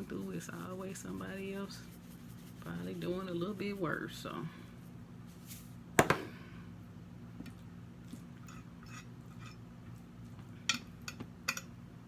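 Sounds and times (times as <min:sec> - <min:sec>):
low room hum: 0:00.0 - 0:12.0
tableware clicking and tapping: 0:06.0 - 0:06.3.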